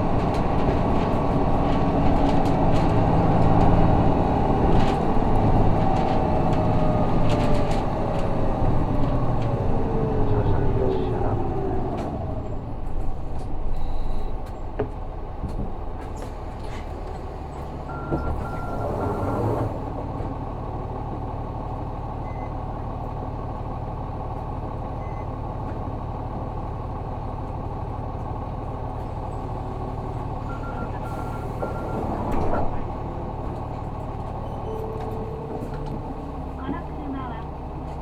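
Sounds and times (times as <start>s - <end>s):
diesel bus engine running: 0.0s - 38.0s.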